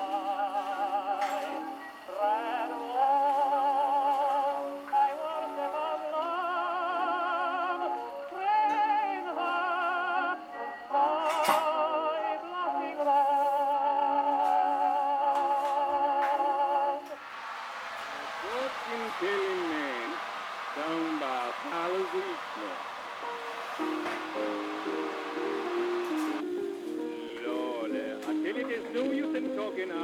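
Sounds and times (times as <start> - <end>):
old record melody with vibrato: 18.3 - 30.0.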